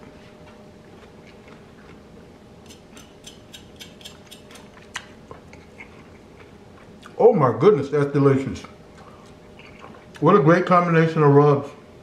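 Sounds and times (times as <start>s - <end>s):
crunchy chewing: 0.4s - 2.1s, 2.7s - 7.2s.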